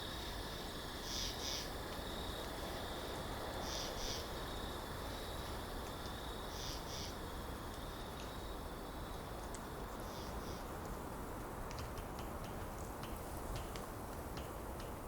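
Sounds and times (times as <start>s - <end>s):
high insect trill: 0.0s - 11.3s
low background hiss: 0.0s - 15.0s.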